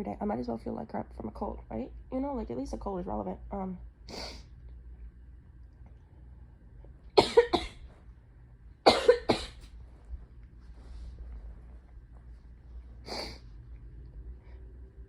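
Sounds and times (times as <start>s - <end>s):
woman coughing: 7.2s - 7.8s, 8.9s - 9.6s.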